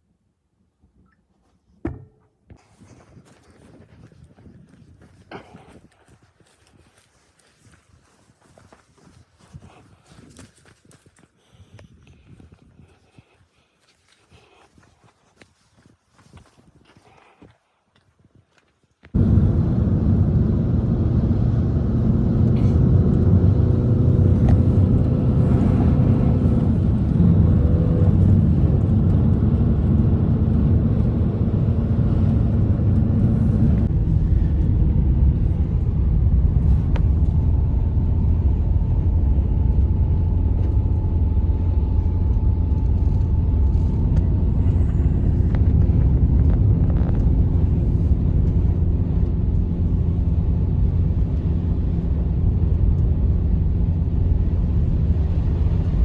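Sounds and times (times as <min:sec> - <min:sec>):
loud low rumble: 0:19.2 - 0:56.0.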